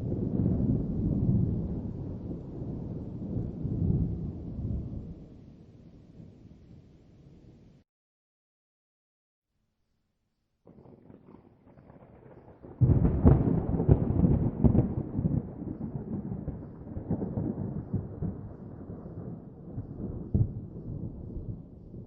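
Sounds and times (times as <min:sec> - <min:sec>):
thunder rumble: 0:00.0 - 0:06.8, 0:10.7 - 0:22.0
thunder crack: 0:10.7 - 0:22.0.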